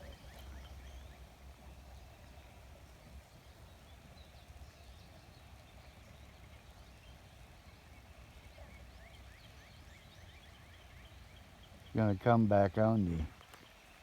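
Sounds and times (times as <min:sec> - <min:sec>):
faint bird chirps: 0:00.0 - 0:12.0.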